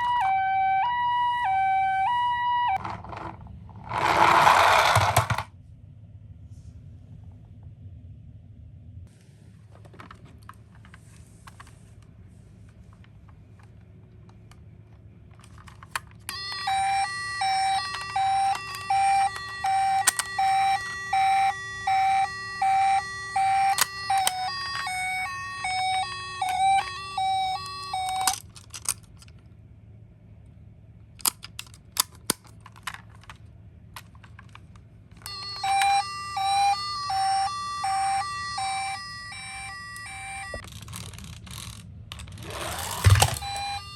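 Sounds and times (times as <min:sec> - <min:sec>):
toy siren two-tone pattern: 0:00.0 - 0:02.8, 0:04.1 - 0:05.2, 0:16.3 - 0:28.4, 0:35.2 - 0:40.6, 0:42.4 - 0:43.9.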